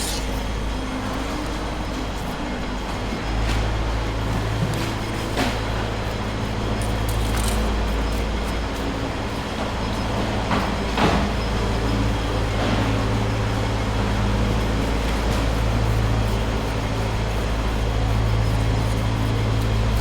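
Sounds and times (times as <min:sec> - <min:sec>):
low machine hum: 0:00.0 - 0:20.0.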